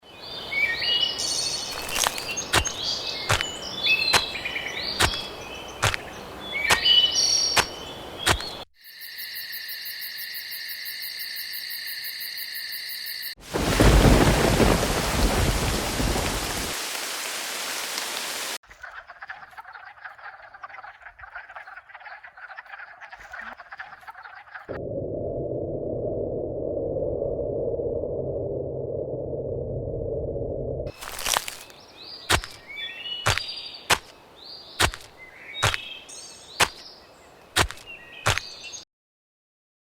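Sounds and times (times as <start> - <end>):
sharp clicks: 6.7 - 6.9, 8.3 - 8.6
chirping croaking animal calls: 18.6 - 24.8
steady electronic tone: 24.8 - 30.9.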